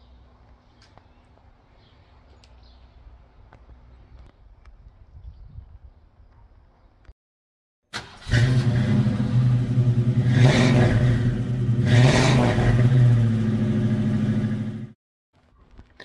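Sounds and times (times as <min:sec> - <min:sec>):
car engine idling and revving: 0:08.1 - 0:15.0.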